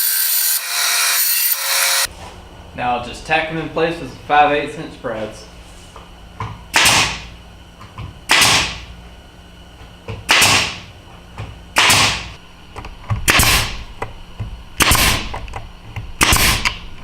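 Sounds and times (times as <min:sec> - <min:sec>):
nail gun firing into plywood: 0:06.8 - 0:07.3, 0:08.3 - 0:08.8, 0:10.3 - 0:10.9, 0:11.8 - 0:12.4, 0:13.2 - 0:13.8, 0:14.8 - 0:15.3, 0:16.2 - 0:16.8.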